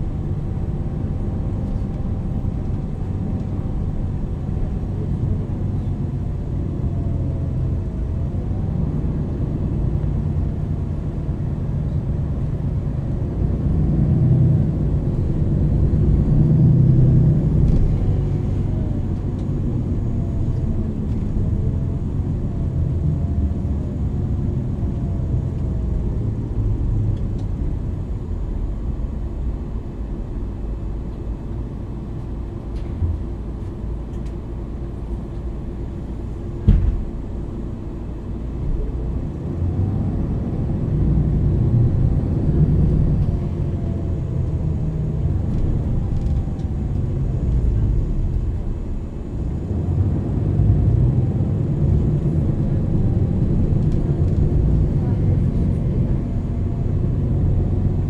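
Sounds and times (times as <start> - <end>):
bus diesel engine: 0.0 - 58.0.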